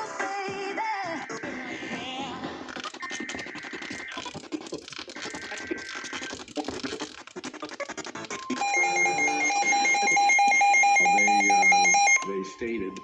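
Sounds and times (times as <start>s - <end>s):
radio static crackling: 0.6s - 10.4s.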